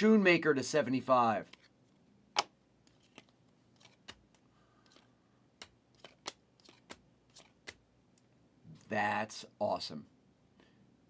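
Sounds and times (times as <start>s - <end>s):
trading cards clicking and snapping: 2.4s - 7.8s.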